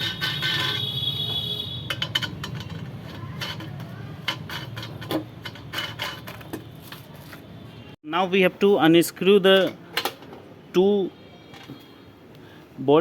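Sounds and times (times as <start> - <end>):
metallic clicks and knocks: 1.8 - 6.8.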